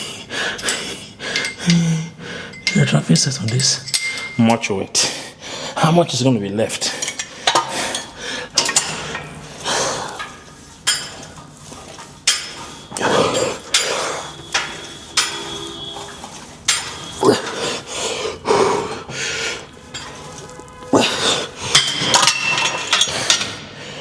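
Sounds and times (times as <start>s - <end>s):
metal gym weights clanking: 12.2s - 23.8s.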